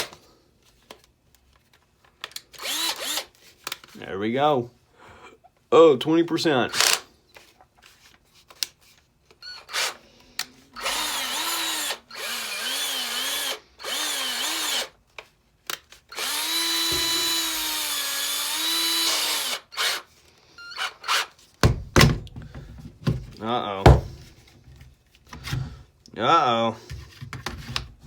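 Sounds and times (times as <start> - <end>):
drill clicks: 2.2 - 3.3, 6.7 - 7.0, 10.8 - 14.9, 16.1 - 20.1
cordless drill motor running: 2.6 - 3.3, 9.4 - 10.0, 10.8 - 15.0, 16.1 - 21.3.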